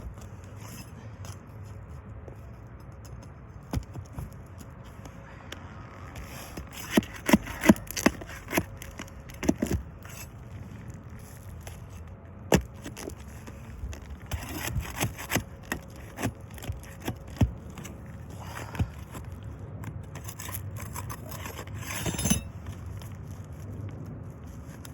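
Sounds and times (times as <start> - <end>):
nails pried from roof shingle: 6.6 - 10.2, 11.6 - 19.4.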